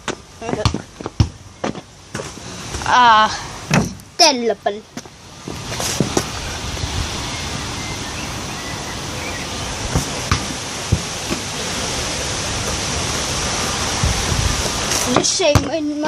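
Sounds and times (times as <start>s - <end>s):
wind on microphone: 5.4s - 15.3s.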